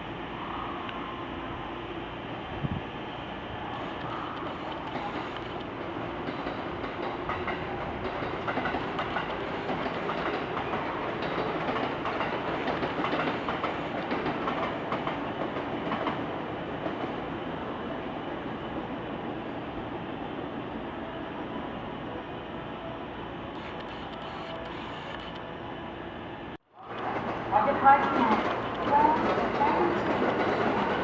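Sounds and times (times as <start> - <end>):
train wheels clattering over rail joints: 3.9 - 16.2.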